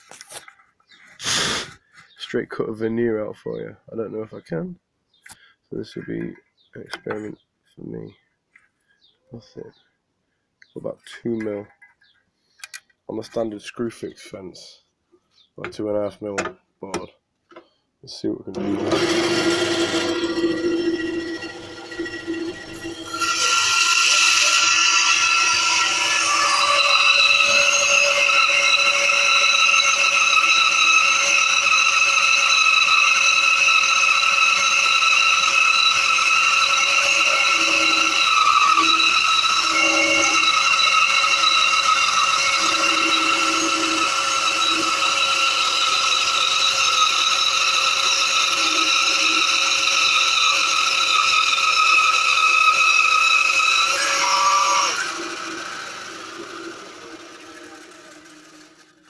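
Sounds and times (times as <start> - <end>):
bandsaw cutting wood: 1.2 - 1.7, 18.6 - 59.0.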